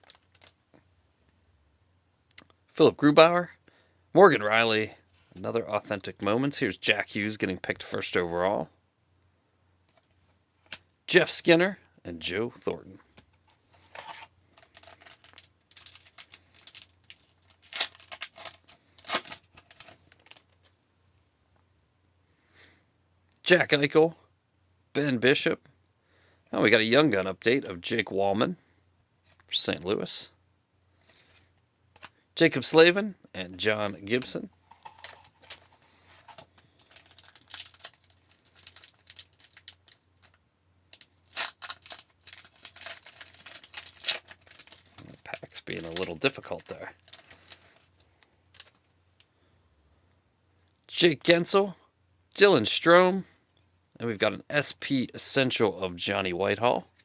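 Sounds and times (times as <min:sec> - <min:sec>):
foil wrapper crinkling and tearing: 0:00.0 - 0:00.6, 0:13.9 - 0:20.8, 0:34.7 - 0:48.9
cards being handled: 0:13.1 - 0:20.8, 0:34.0 - 0:40.0, 0:41.0 - 0:48.8.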